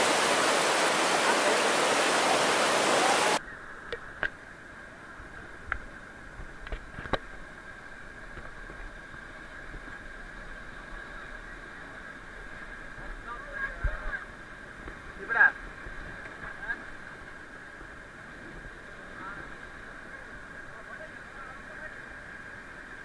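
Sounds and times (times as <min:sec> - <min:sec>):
river rapids rushing: 0:00.0 - 0:03.4.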